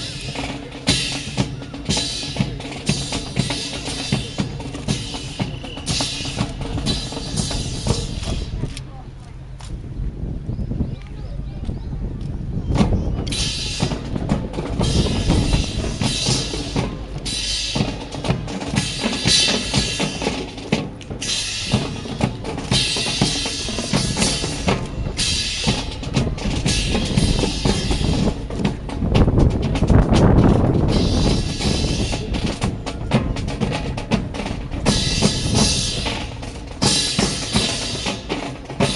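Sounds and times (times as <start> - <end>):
drum-led music: 0.0 - 8.8, 12.7 - 38.9
cymbal crashes: 14.8 - 20.5, 21.2 - 28.4, 34.8 - 38.9.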